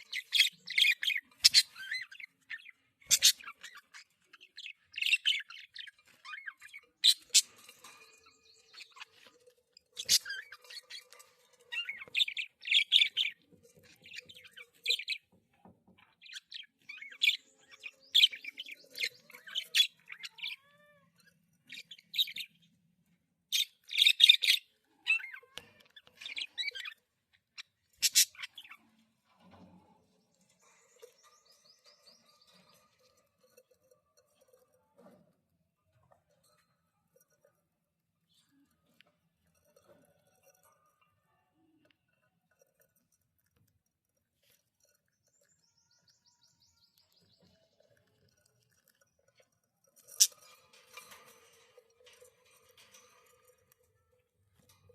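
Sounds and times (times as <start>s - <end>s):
budgerigar chirping and squawking: 0.0s - 4.2s, 27.9s - 28.7s.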